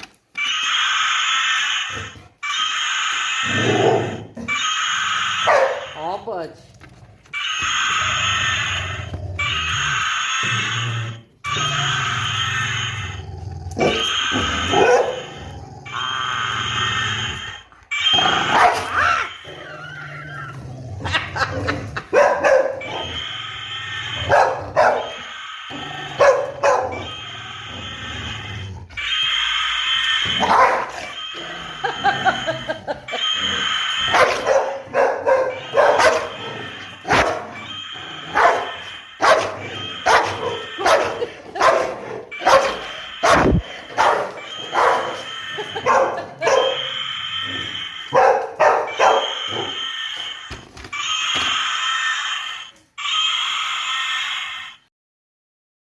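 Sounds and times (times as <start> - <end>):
toy electronic roaring: 0.3 - 54.9
small dog barking and yipping: 5.4 - 5.9, 30.4 - 31.0, 48.1 - 49.4.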